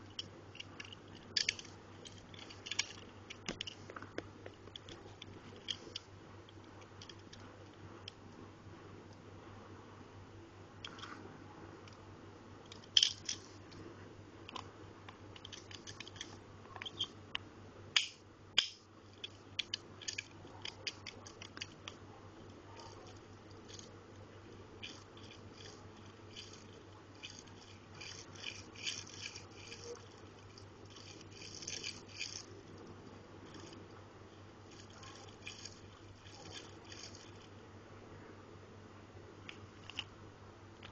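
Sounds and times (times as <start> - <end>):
toy car handling clicks and taps: 0.0 - 7.4, 12.7 - 13.5, 15.4 - 17.1, 18.0 - 22.0, 22.8 - 23.9, 24.8 - 32.5, 33.5 - 33.8, 34.7 - 37.5, 39.8 - 40.1
low electrical hum: 0.0 - 40.9.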